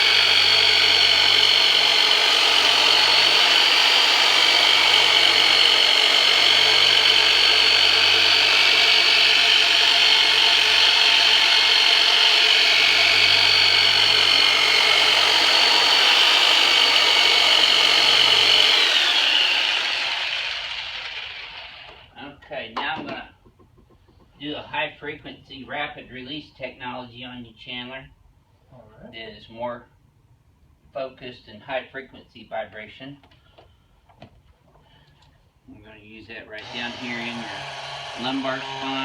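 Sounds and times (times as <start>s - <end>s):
massage tool motor whine: 0.0s - 22.1s, 36.6s - 39.0s.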